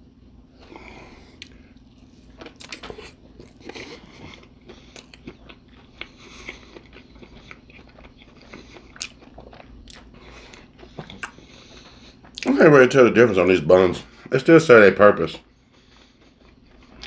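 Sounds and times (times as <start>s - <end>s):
steady low hum: 0.0s - 17.0s
person chewing with wet mouth clicks: 1.4s - 12.5s.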